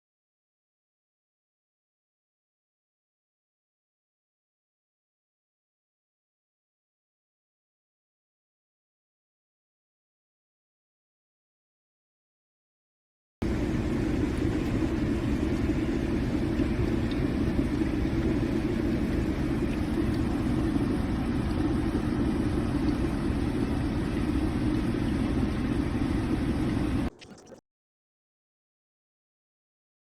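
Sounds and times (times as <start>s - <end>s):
electric kettle rumbling: 13.4s - 27.6s.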